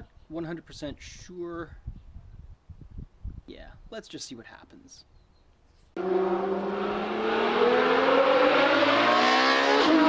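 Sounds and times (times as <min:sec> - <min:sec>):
car engine accelerating: 0:06.0 - 0:10.0.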